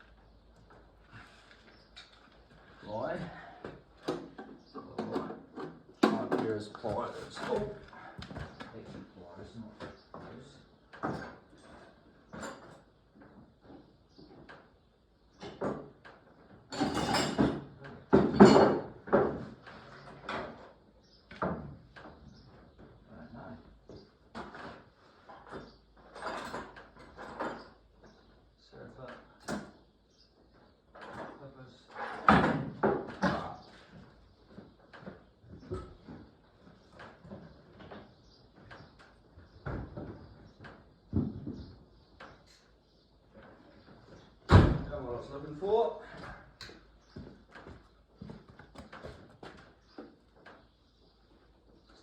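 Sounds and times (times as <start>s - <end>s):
hand tools clattering in toolbox: 16.7s - 17.6s
hand tools clinking and knocking: 16.7s - 19.4s.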